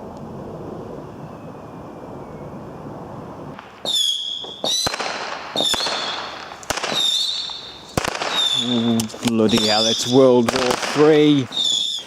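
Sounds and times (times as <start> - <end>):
whistling fireworks: 0.9 - 12.0
firework bangs: 3.5 - 12.0.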